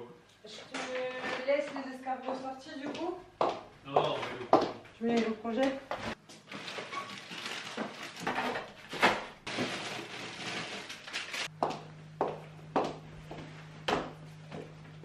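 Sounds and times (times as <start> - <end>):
shopping bags rustling: 6.4 - 11.5.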